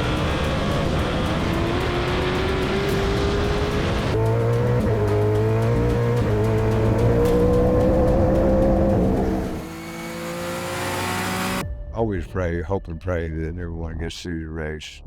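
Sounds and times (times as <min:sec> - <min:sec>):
race car engine accelerating: 0:00.0 - 0:11.6.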